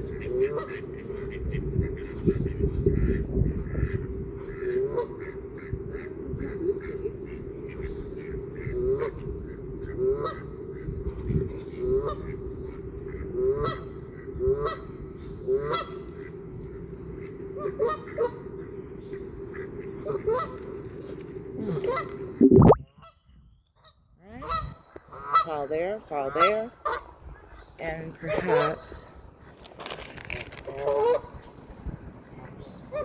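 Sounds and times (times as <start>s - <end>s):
waterfowl honking: 0.0s - 11.0s, 11.6s - 16.4s, 17.2s - 20.8s, 24.4s - 29.1s, 30.8s - 31.4s
steady low hum: 0.0s - 22.8s.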